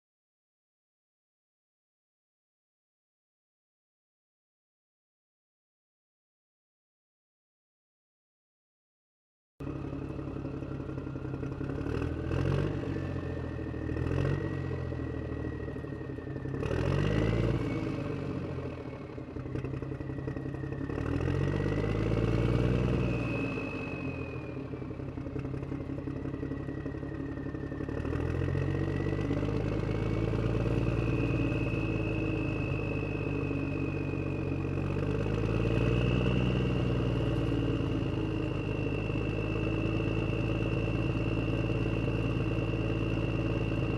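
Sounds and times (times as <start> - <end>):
truck engine revving: 11.6 - 43.9.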